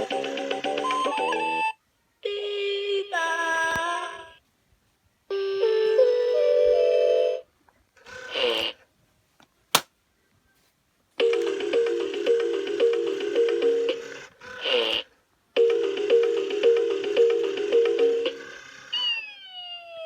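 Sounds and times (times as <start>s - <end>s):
sharp click: 9.7s - 9.9s.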